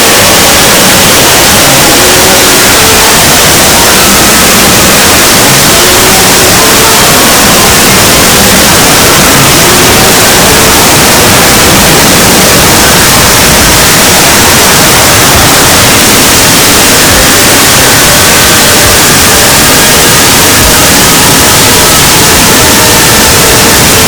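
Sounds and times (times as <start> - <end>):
loud distorted static: 0.0 - 24.0.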